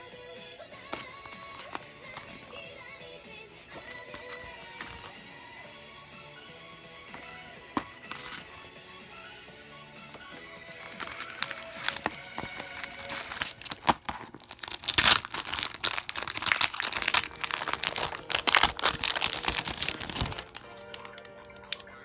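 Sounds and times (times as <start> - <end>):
background music: 0.0 - 22.0
packaging crinkling and tearing: 0.8 - 2.6, 3.7 - 5.1, 7.1 - 8.6, 10.2 - 22.0.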